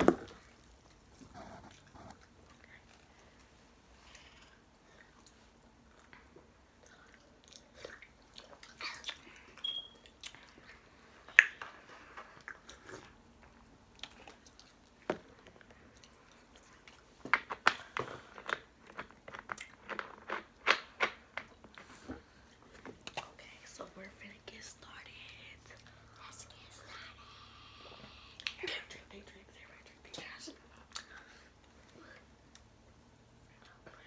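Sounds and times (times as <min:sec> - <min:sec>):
cookies being chewed: 0:00.0 - 0:23.4, 0:30.6 - 0:32.8.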